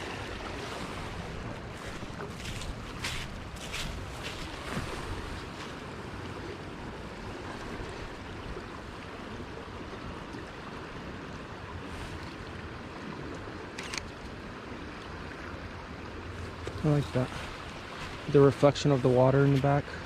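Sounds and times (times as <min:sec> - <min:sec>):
river water rushing: 0:00.0 - 0:20.0.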